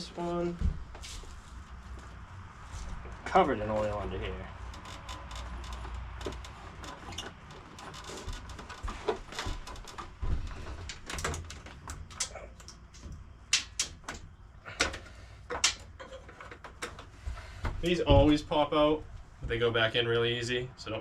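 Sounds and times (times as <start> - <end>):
part snapping out: 14.8 - 15.9.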